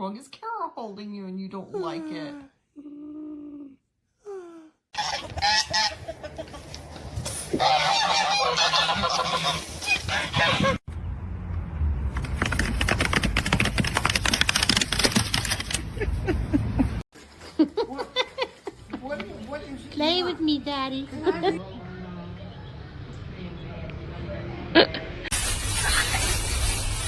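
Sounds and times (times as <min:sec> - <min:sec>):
large bird honking: 0:07.6 - 0:10.8
dense rattling or flapping: 0:12.1 - 0:15.9.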